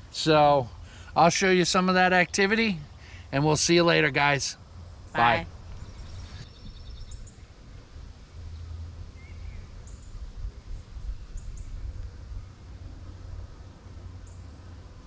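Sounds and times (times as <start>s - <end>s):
wind rumble on microphone: 5.6s - 14.2s.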